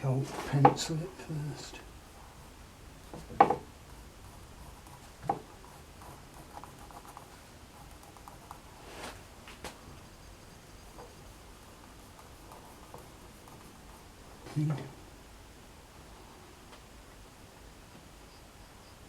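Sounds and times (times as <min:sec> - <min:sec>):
pencil scratching on leather: 0:04.2 - 0:08.8, 0:10.6 - 0:14.2.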